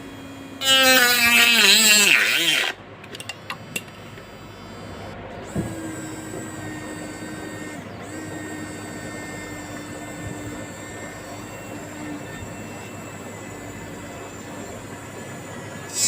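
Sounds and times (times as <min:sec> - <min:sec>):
rotary tool motor running: 0:00.6 - 0:16.0.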